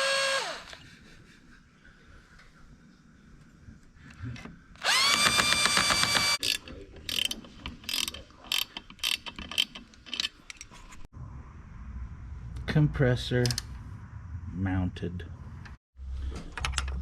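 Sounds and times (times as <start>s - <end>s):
power drill whining: 0.0s - 0.8s, 4.8s - 6.4s
ratchet wrench clicking: 4.9s - 10.6s.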